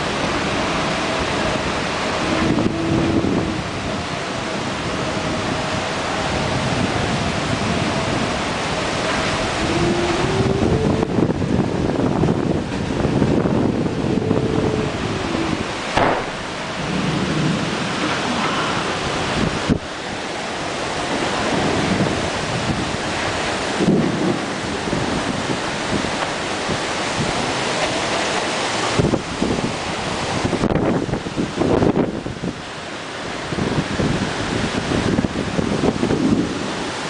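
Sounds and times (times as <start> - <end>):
stormy wind and rain: 0.0 - 37.0
sharp knocks: 16.0 - 16.5.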